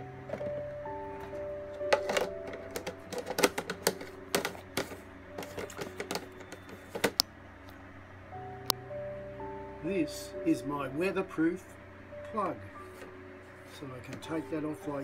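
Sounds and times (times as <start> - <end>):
soft background music: 0.0 - 15.0
plastic box clicking: 1.9 - 7.2.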